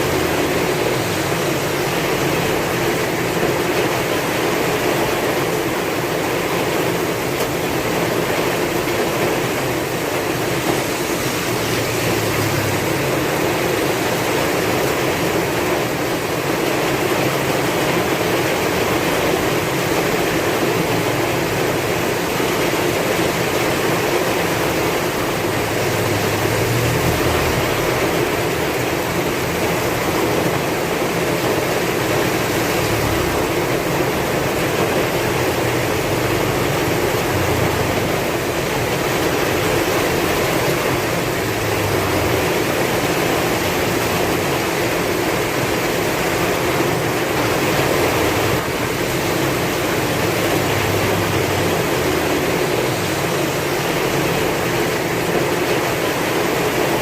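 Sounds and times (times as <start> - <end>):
heavy rain in strong wind: 0.0 - 57.0.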